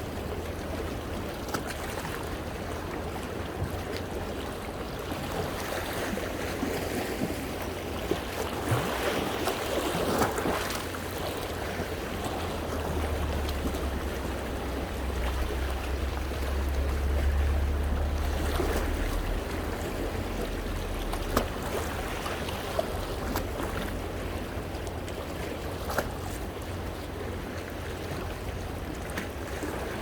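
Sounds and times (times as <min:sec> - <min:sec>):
sea waves washing against rocks: 0:00.0 - 0:30.0
water sloshing and splashing: 0:00.0 - 0:30.0
low rumble: 0:12.1 - 0:24.9.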